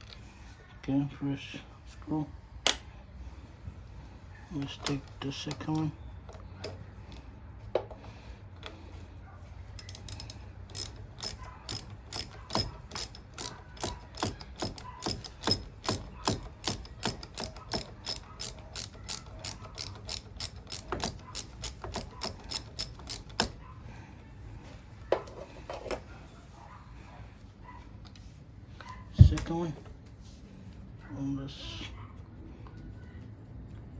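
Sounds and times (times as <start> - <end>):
hand ratchet clicking: 9.8 - 23.7.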